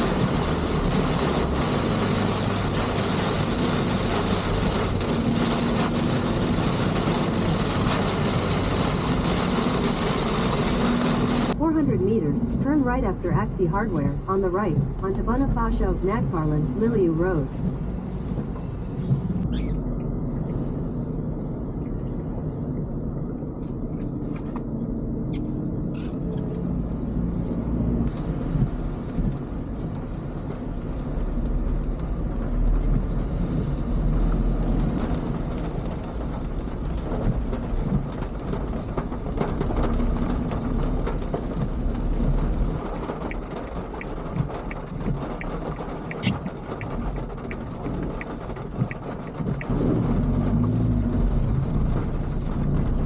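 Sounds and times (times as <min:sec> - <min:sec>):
car engine and road rumble: 0:00.0 - 0:53.0.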